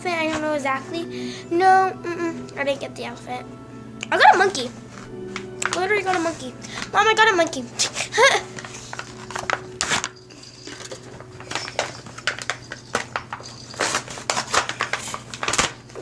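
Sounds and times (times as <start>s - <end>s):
plastic wrapper crinkling: 4.6s - 16.0s.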